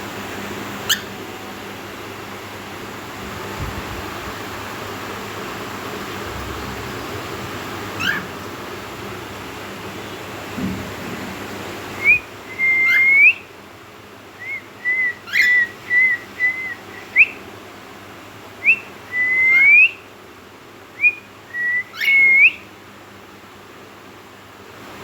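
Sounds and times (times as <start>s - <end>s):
cockatiel whistling: 0.9s - 1.2s, 8.0s - 8.3s, 12.0s - 13.5s, 14.4s - 17.4s, 18.6s - 20.0s, 21.0s - 22.7s.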